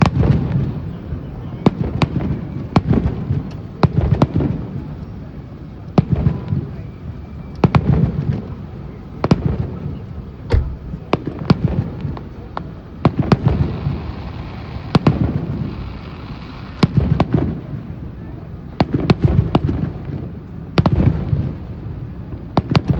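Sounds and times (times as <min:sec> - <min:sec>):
low rumble: 0:10.5 - 0:11.3
fireworks bursting: 0:10.5 - 0:11.7.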